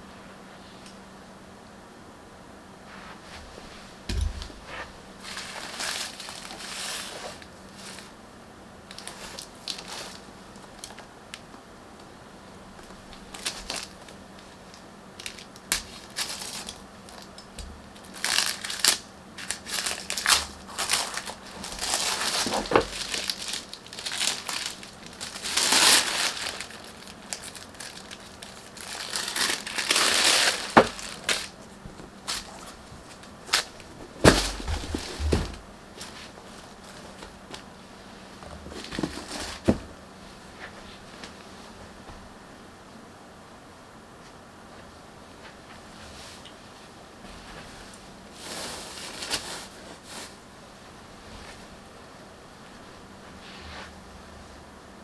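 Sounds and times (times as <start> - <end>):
packaging crinkling: 4.1 - 8.2, 8.9 - 11.5, 12.8 - 37.7, 38.6 - 39.8.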